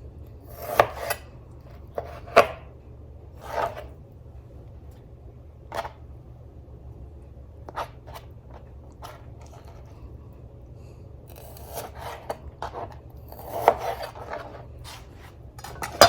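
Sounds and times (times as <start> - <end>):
knife slicing meat: 0.5 - 1.2, 11.3 - 16.0.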